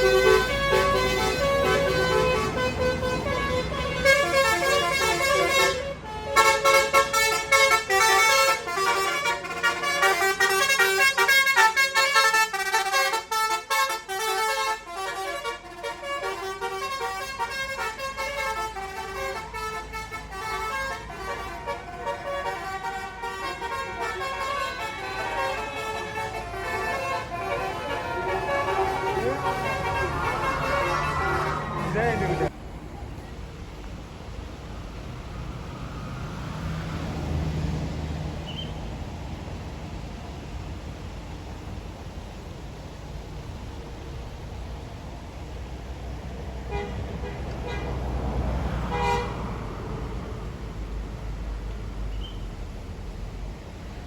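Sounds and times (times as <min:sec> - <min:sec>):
musical air horn melody: 0:00.0 - 0:32.5
bus engine running low: 0:00.0 - 0:54.0.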